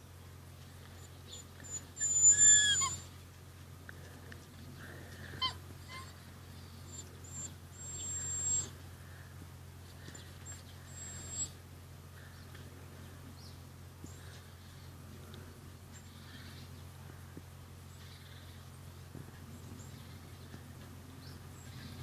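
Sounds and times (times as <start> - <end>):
steady low hum: 0.0 - 22.0
puppies squealing and yelping: 0.9 - 3.2, 5.3 - 8.8, 10.4 - 11.6
puppy whining: 1.0 - 3.2, 5.2 - 8.9, 10.1 - 11.6.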